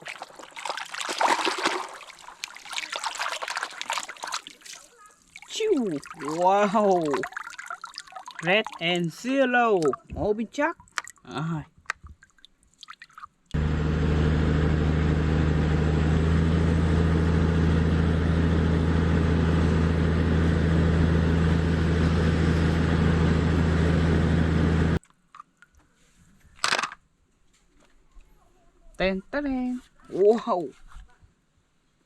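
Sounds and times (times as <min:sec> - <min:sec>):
motor droning: 0:13.6 - 0:25.0.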